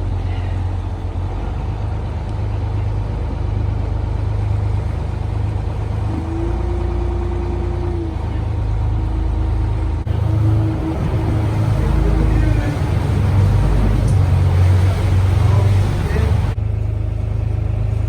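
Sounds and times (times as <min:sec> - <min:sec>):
boat engine droning: 0:00.0 - 0:18.0.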